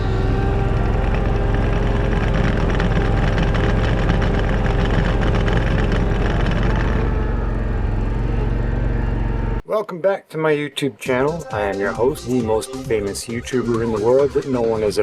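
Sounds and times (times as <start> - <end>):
riding mower engine running: 0.0 - 9.6.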